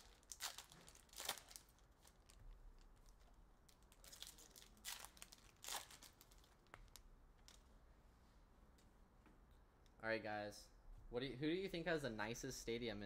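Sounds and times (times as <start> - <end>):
card packs rustling and crinkling: 0.0 - 7.6.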